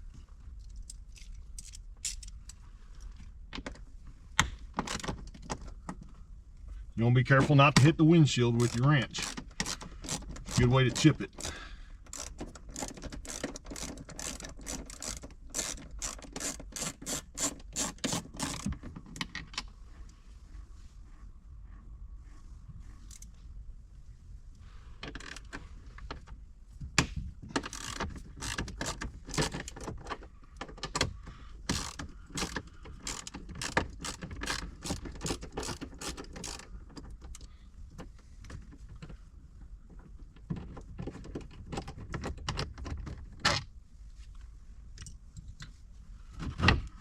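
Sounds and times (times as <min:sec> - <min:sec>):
ratchet wrench clicking: 0:08.6 - 0:18.7, 0:27.6 - 0:29.7, 0:31.7 - 0:36.7.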